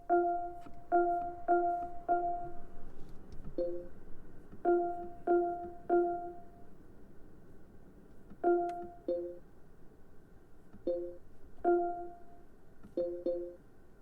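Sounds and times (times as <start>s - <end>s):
soft piano notes: 0.0s - 9.5s, 10.8s - 13.7s.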